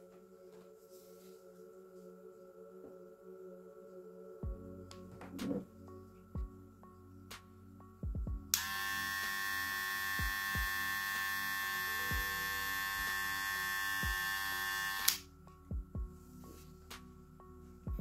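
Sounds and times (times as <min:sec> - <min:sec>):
hair clipper whining: 0:08.5 - 0:15.2.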